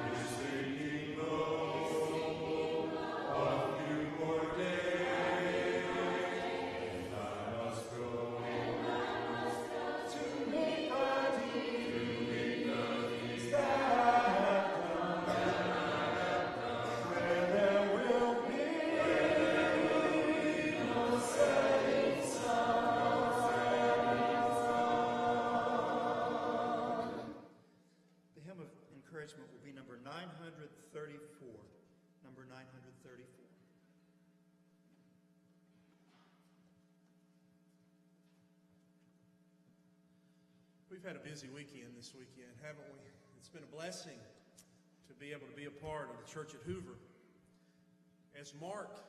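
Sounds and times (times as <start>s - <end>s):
congregation singing a hymn: 0.0s - 27.5s.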